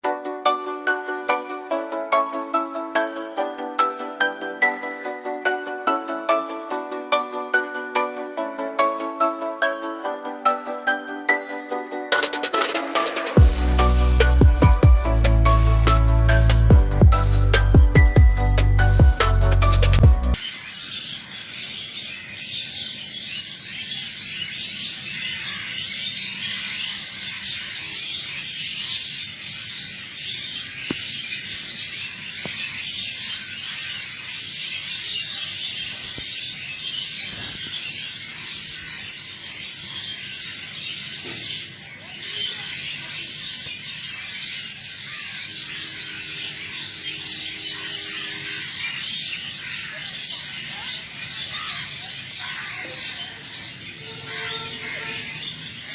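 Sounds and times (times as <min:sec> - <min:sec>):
birds chirping: 0:00.0 - 0:55.9.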